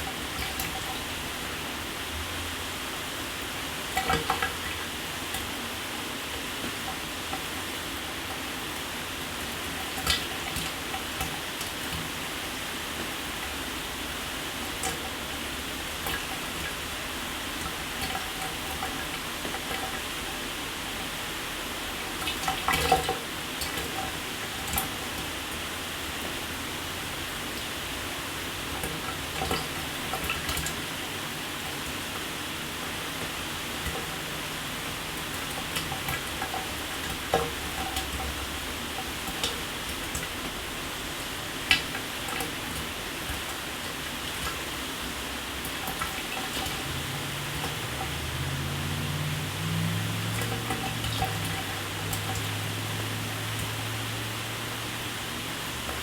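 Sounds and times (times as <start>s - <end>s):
water spattering: 33.0s - 56.0s.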